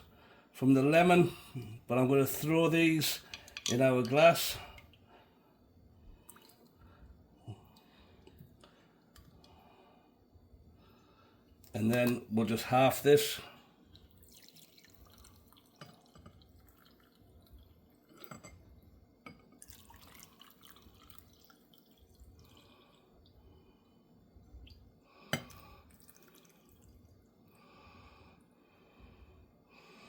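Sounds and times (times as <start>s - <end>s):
liquid trickling and dripping: 6.2s - 6.9s, 13.8s - 18.5s, 19.3s - 23.4s, 24.4s - 27.4s
glass clink: 18.2s - 18.6s.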